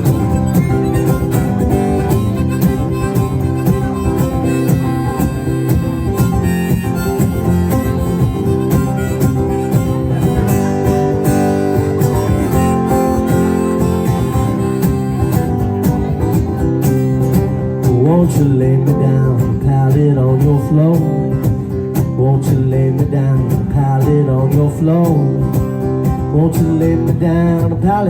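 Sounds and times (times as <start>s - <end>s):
harmonica melody: 0.0s - 17.8s
acoustic guitar picking: 0.0s - 28.0s.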